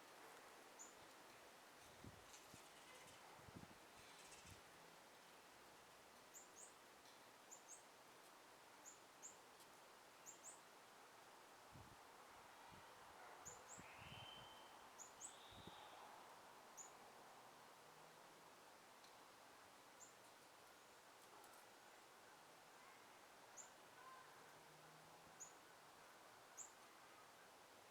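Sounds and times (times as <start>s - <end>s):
soft steady hiss: 0.0s - 27.9s
songbirds chirping: 0.4s - 1.4s, 5.8s - 10.8s, 12.6s - 17.1s, 25.3s - 27.9s
bird whistled notes: 14.0s - 14.7s.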